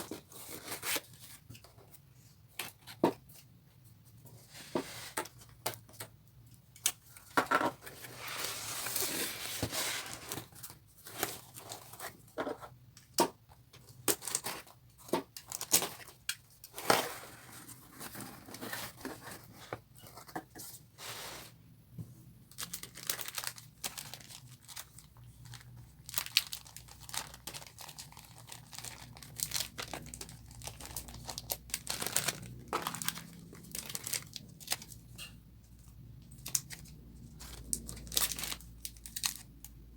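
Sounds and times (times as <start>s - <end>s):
packaging crinkling and crackling: 22.5s - 35.3s, 36.3s - 39.8s
packaging tearing: 22.6s - 34.9s, 37.4s - 39.5s.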